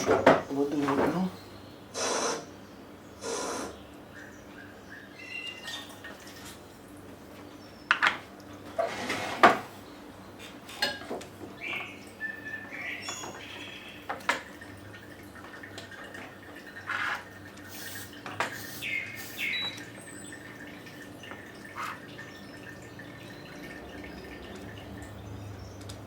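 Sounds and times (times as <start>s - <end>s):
water dripping and splashing: 13.1s - 26.0s
short splashy hisses: 17.7s - 19.5s.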